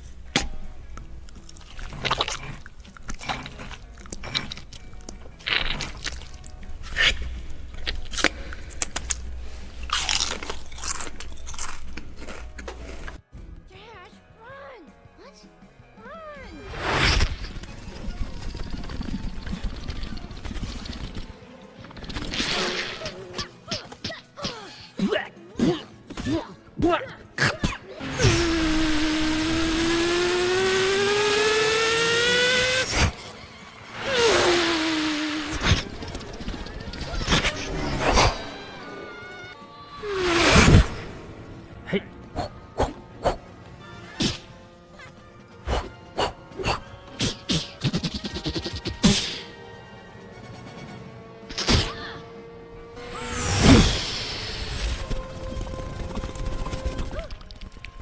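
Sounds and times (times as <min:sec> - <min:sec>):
chewing crunchy food: 0:01.4 - 0:06.6, 0:09.8 - 0:13.2
motor-like whine: 0:28.0 - 0:32.9, 0:52.4 - 0:55.2.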